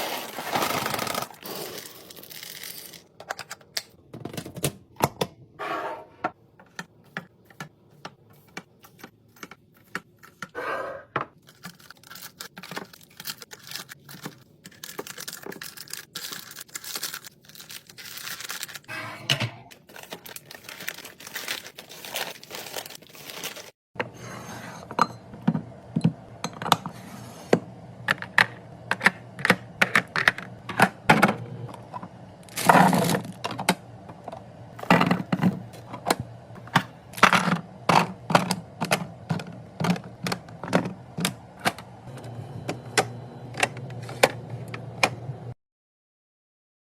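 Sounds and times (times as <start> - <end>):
wrappers crinkling and tearing: 0.0 - 3.0, 11.4 - 18.9, 19.7 - 23.8
low background hum: 0.1 - 45.6
containers and packaging clicking: 11.4 - 18.8.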